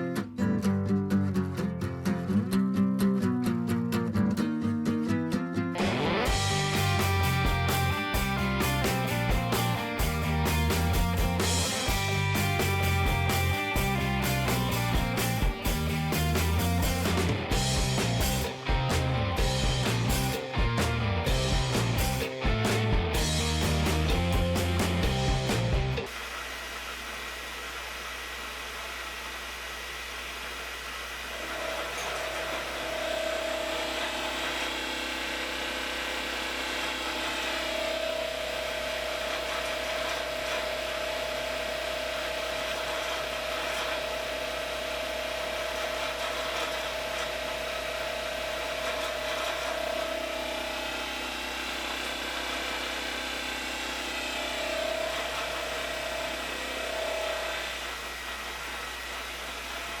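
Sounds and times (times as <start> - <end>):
milling machine cutting metal: 30.4 - 60.0.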